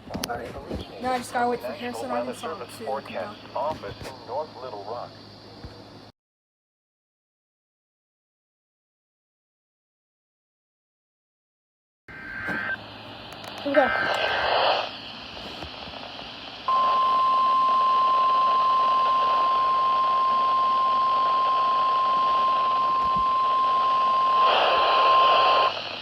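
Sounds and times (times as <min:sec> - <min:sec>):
radio noise bursts: 0:00.7 - 0:05.0, 0:12.1 - 0:12.8, 0:13.4 - 0:16.2, 0:22.6 - 0:26.0.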